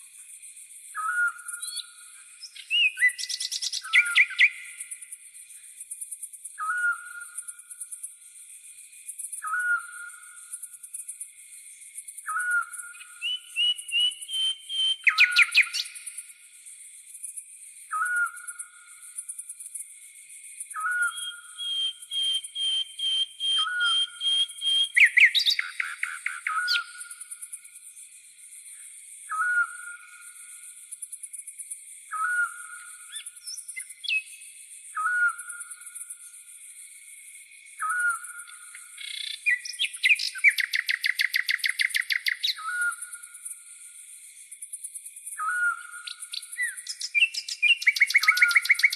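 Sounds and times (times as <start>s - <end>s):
faint bird chirps: 0.0s - 48.9s
high-pitched insect trill: 0.0s - 48.9s
pulsing cricket chorus: 0.0s - 48.9s
bird whistle rising and holding: 20.8s - 25.7s.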